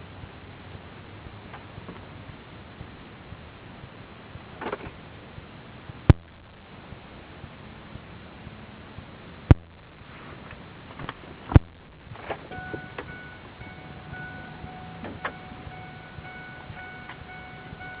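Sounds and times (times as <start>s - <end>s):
low engine hum: 0.0s - 18.0s
dashboard warning chime beeps: 12.5s - 18.0s.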